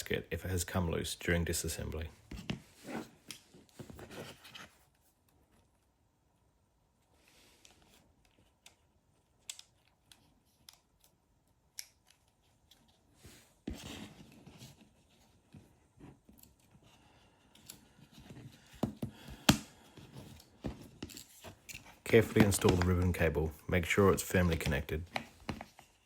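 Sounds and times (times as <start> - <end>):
plastic scraping and rustling: 20.0 - 23.4.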